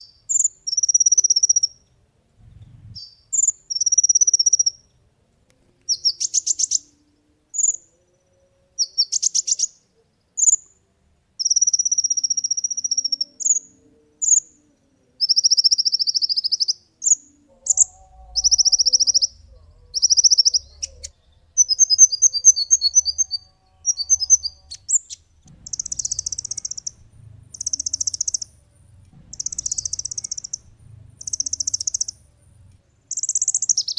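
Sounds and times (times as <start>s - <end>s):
bird trilling song: 15.2s - 33.9s
bird chip notes: 17.6s - 33.7s.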